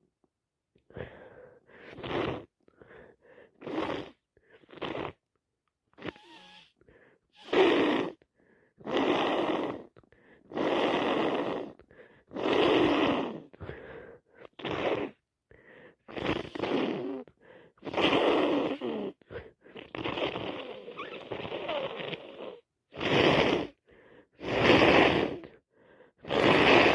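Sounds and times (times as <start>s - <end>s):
woman blowing her nose: 1.8s - 2.5s, 3.6s - 5.2s, 6.0s - 8.2s, 8.8s - 9.9s, 10.5s - 11.7s, 12.3s - 13.8s, 14.4s - 15.2s, 16.1s - 17.2s, 17.8s - 23.8s, 24.4s - 25.6s, 26.2s - 26.9s
woman sniffing: 6.0s - 8.2s, 10.5s - 26.9s.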